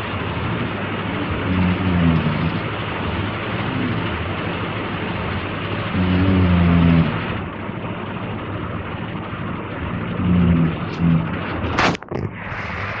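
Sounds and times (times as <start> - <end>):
steady hiss: 0.0 - 7.5
man snoring: 1.3 - 2.7, 3.6 - 4.1, 6.0 - 7.3, 10.1 - 11.9.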